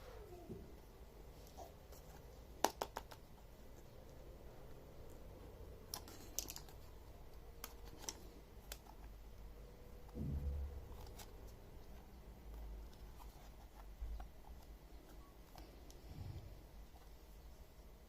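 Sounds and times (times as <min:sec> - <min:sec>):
dull low thump: 0:10.2 - 0:11.0.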